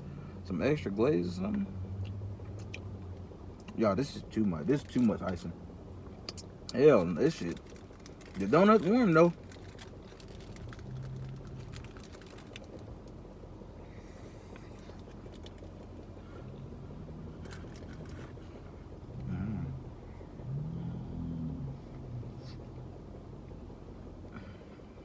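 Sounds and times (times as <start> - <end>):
vehicle cabin rumble: 0.0 - 25.0
man humming mmm: 19.2 - 19.9.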